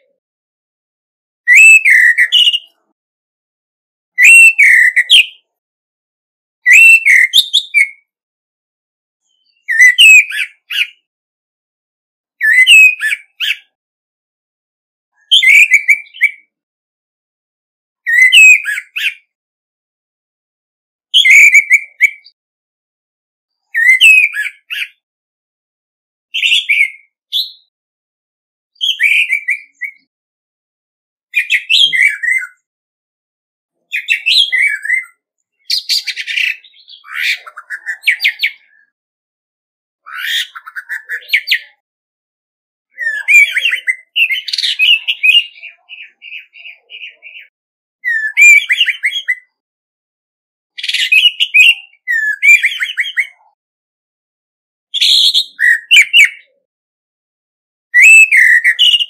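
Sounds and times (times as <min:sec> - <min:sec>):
thrush whistling song: 0:01.5 - 0:02.8, 0:04.1 - 0:05.5, 0:06.6 - 0:08.1, 0:09.3 - 0:11.1, 0:12.4 - 0:13.8, 0:15.2 - 0:16.5, 0:18.0 - 0:19.4, 0:23.7 - 0:25.0, 0:28.8 - 0:30.1, 0:31.4 - 0:32.6, 0:33.9 - 0:38.7, 0:42.9 - 0:46.5, 0:48.0 - 0:49.5, 0:50.8 - 0:53.4, 0:55.0 - 0:56.2, 0:57.9 - 0:59.0.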